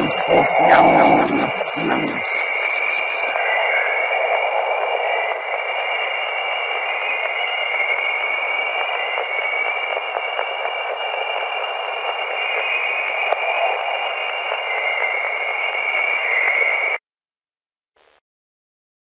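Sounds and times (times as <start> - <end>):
radio static hiss: 0.0 - 3.6.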